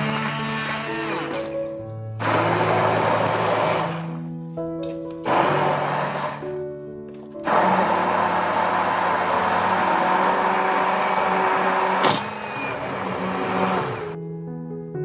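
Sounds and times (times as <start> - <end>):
blender motor running: 0.0 - 1.4, 2.2 - 4.2, 5.3 - 6.4, 7.4 - 14.2
soft background music: 0.0 - 12.0, 12.9 - 15.0.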